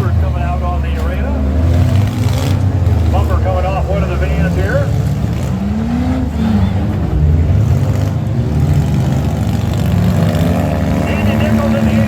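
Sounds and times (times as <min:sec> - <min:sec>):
van engines revving: 0:00.0 - 0:12.0.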